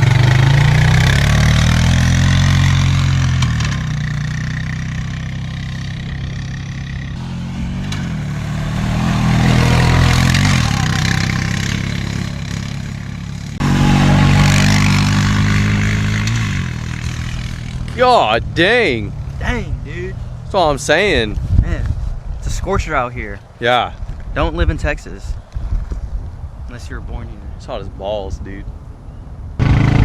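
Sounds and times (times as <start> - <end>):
atv engine revving: 0.0 - 21.4, 29.6 - 30.0.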